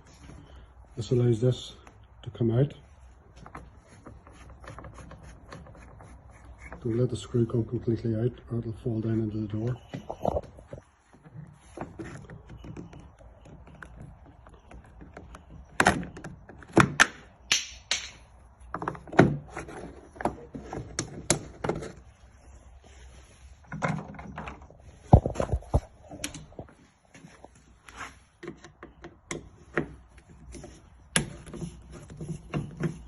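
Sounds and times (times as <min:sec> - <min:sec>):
tool clicking and knocking: 0:28.4 - 0:33.0.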